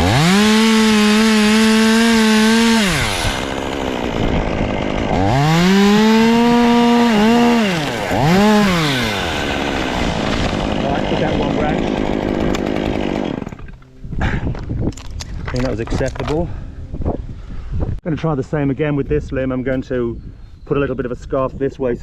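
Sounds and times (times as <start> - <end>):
chainsaw revving and idling: 0.0 - 13.9.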